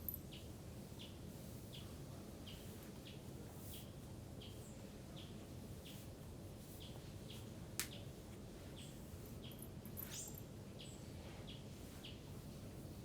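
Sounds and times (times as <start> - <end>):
low steady background hiss: 0.0 - 13.0.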